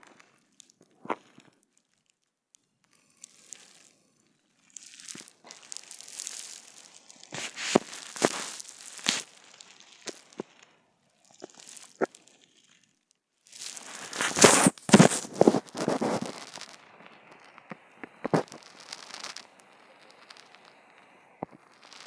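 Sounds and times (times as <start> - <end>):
rustling and crinkling: 3.2 - 3.9, 4.5 - 12.8, 13.5 - 20.8.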